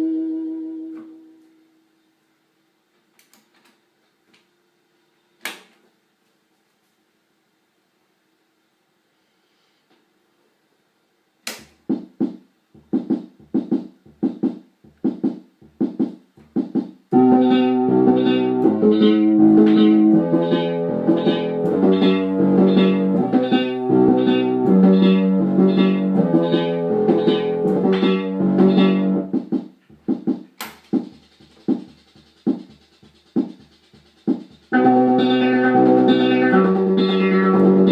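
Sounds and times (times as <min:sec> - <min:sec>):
keyboard chords: 0:12.8 - 0:30.1, 0:31.0 - 0:37.9
short plucked keyboard notes: 0:17.2 - 0:29.2, 0:34.8 - 0:37.9
low bass line: 0:17.2 - 0:29.3, 0:34.8 - 0:37.9.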